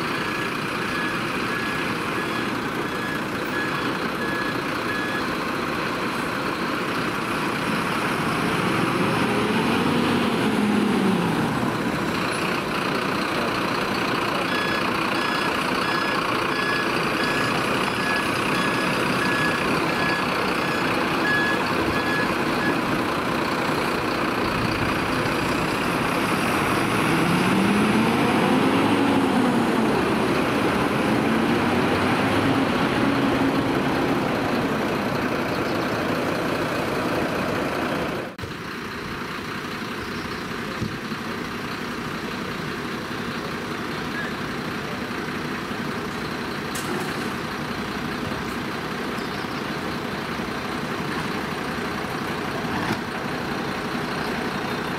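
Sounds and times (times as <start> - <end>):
reversing beeper: 0.0 - 5.4, 14.3 - 22.9
heavy truck engine running: 0.0 - 54.9.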